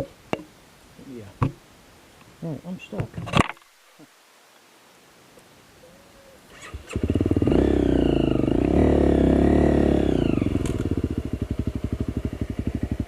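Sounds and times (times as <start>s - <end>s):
dirt bike engine revving: 6.6s - 13.0s.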